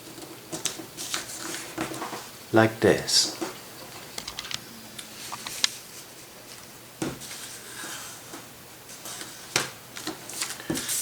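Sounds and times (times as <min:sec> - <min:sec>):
paper rustling and crinkling: 0:00.0 - 0:02.3, 0:05.2 - 0:11.0.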